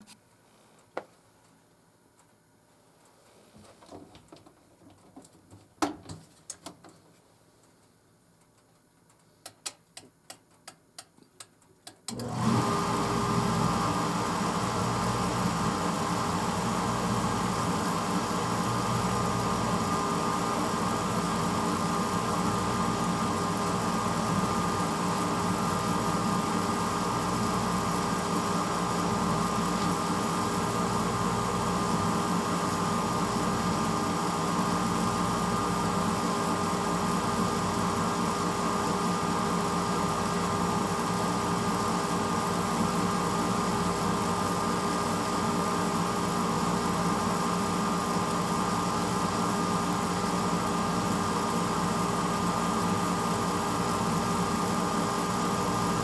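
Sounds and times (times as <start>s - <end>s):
dishwasher motor humming: 12.1s - 56.0s.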